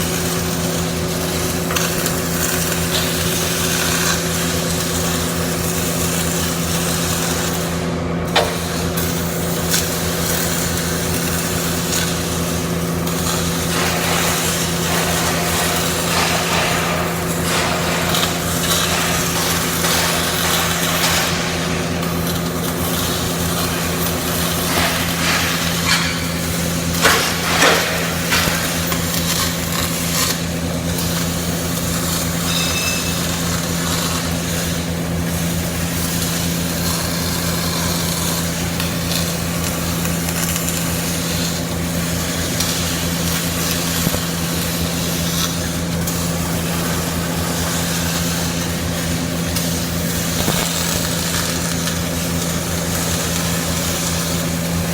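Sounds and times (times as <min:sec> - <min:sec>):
welding arc crackling: 0:00.0 - 0:54.9
welding pops: 0:08.3 - 0:31.3, 0:42.4 - 0:54.9.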